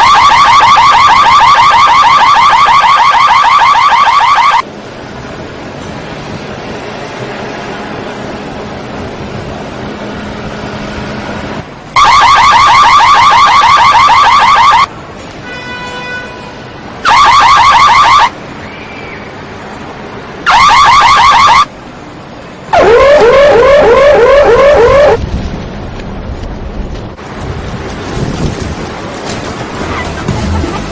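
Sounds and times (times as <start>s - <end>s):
car alarm siren: 0.0s - 4.6s, 12.0s - 14.9s, 17.0s - 18.4s, 20.4s - 21.7s, 22.7s - 25.2s.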